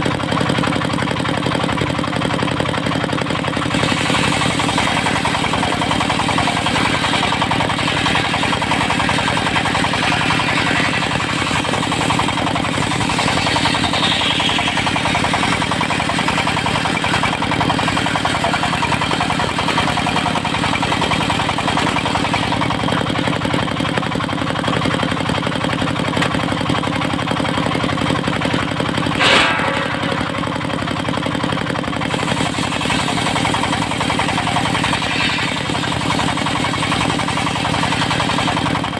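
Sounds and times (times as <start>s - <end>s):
diesel engine running: 0.0s - 38.9s
circular saw cutting wood: 0.8s - 24.1s, 24.8s - 38.9s
sharp crack: 28.2s - 37.2s.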